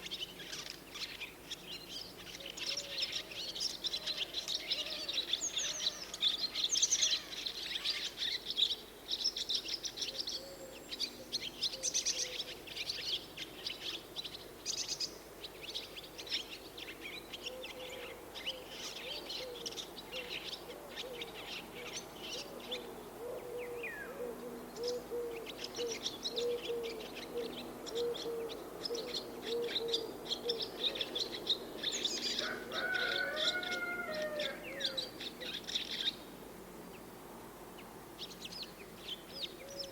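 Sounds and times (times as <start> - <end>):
low repeating bird call: 17.5 - 31.2.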